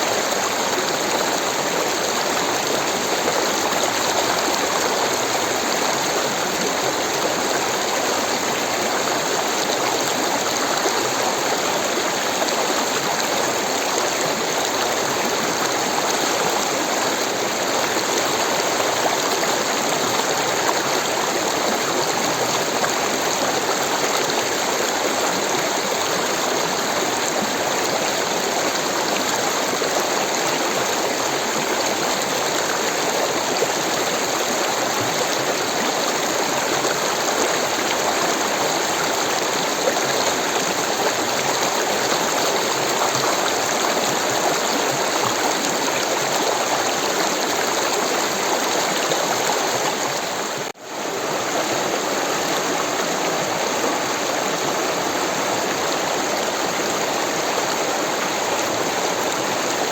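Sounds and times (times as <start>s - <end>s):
stream water rushing: 0.0s - 59.9s.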